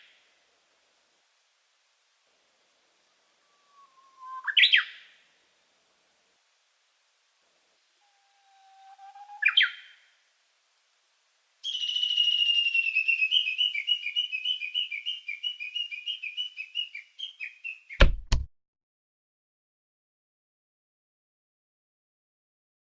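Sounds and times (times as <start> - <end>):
bird-like whistled warbling: 3.4 - 4.9, 8.0 - 9.8, 11.6 - 17.5.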